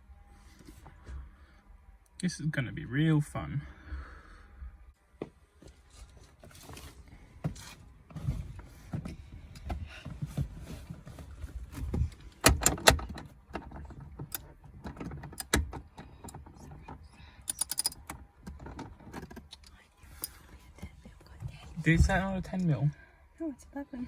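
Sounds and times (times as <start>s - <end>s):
tools clicking and knocking: 17.5s - 19.6s.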